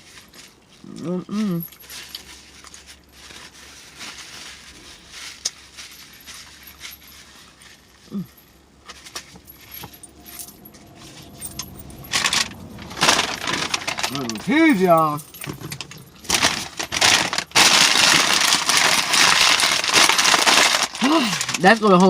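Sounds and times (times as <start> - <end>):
rustling: 0.0 - 22.0
light clinks and clicks: 8.2 - 12.9.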